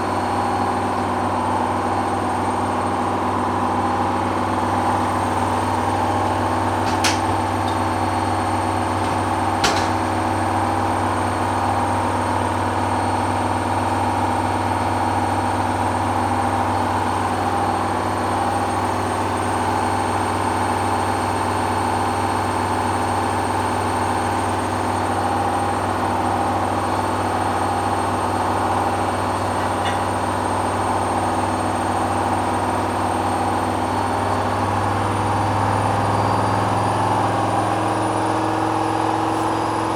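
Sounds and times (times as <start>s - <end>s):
washing machine motor spinning: 4.1s - 12.9s.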